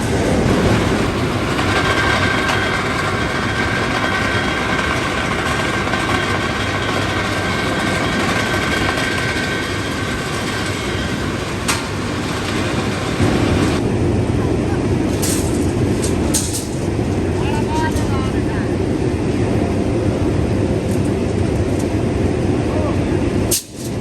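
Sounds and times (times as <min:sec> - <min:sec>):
thin high whine: 0:00.0 - 0:13.8
heavy machinery running: 0:00.0 - 0:20.6.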